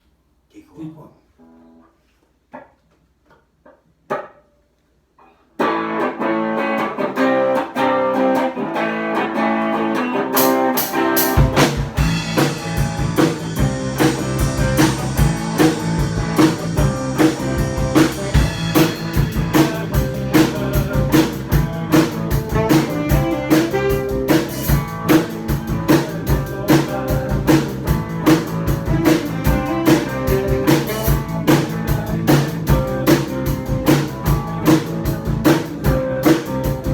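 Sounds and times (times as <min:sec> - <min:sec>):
drums: 0:05.2 - 0:36.9
guitar playing: 0:05.2 - 0:36.9
band playing: 0:05.6 - 0:36.9
low bass: 0:11.4 - 0:36.9.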